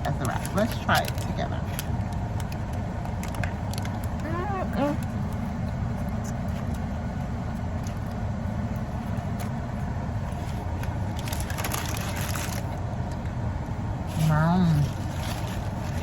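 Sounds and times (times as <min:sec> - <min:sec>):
crisp crunching: 0:07.8 - 0:13.2, 0:14.2 - 0:16.0.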